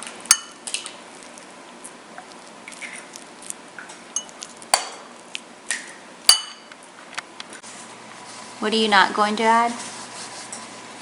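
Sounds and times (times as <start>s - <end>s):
utensil clinking on bowl: 0.3s - 0.7s, 4.1s - 5.1s, 6.3s - 6.7s.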